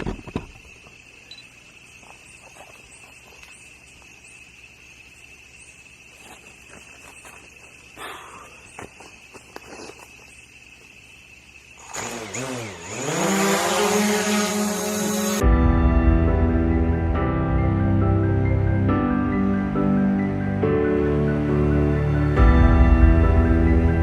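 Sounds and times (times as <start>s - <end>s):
insects trilling: 0.0s - 15.4s
faint high chirps: 1.2s - 5.9s.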